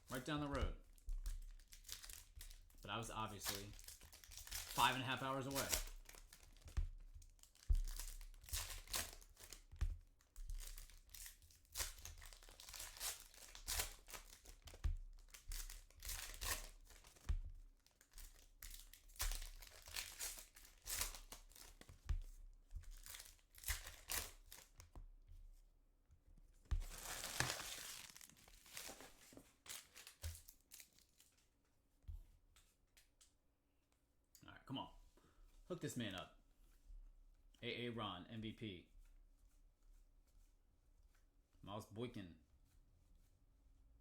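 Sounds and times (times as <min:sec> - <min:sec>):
foil wrappers tearing and crinkling: 0:00.1 - 0:09.8, 0:10.4 - 0:22.0, 0:22.9 - 0:24.8, 0:26.7 - 0:31.2.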